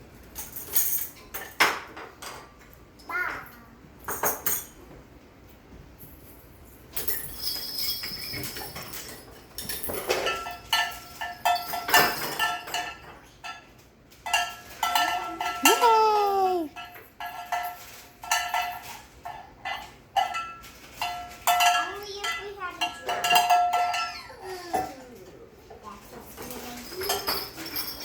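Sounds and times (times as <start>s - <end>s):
cowbell and metal percussion clanks: 7.0s - 13.2s, 14.2s - 16.0s.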